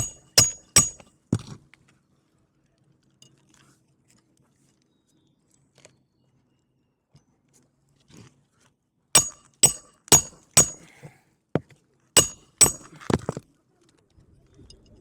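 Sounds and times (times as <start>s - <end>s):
hammer striking roofing nails: 0.0s - 1.0s, 9.2s - 10.8s, 12.2s - 13.4s.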